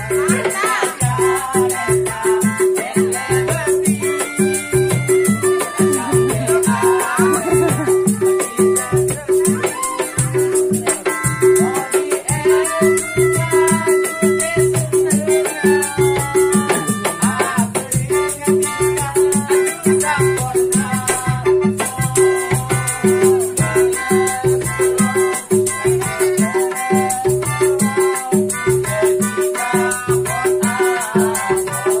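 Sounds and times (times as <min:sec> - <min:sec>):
fast percussion beat: 0:00.0 - 0:32.0
melodica melody: 0:00.0 - 0:32.0.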